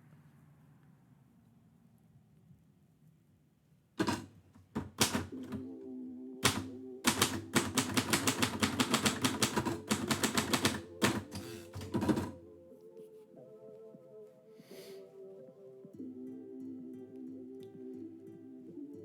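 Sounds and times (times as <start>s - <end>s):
typewriter keys striking: 4.0s - 5.6s, 6.4s - 12.4s.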